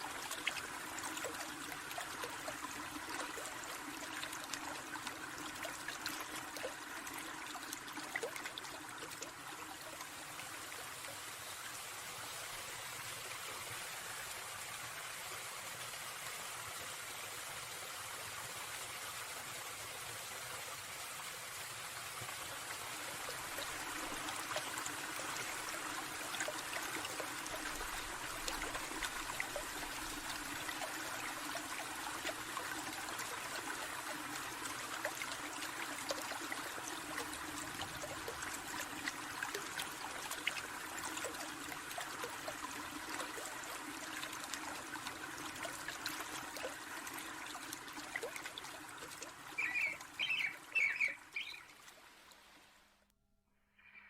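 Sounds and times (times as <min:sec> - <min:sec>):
small water splashes: 0:00.0 - 0:11.7, 0:22.2 - 0:52.8
stream trickling: 0:00.0 - 0:53.1.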